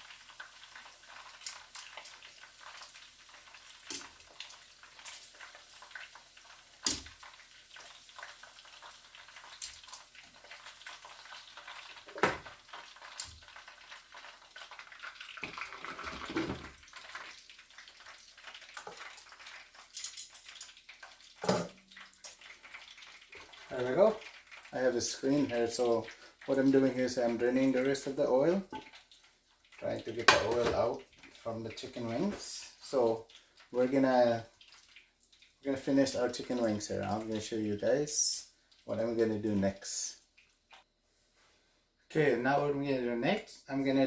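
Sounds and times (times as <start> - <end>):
oil sizzling and crackling: 0.0 - 44.0
metal cookware knock: 21.4 - 21.8.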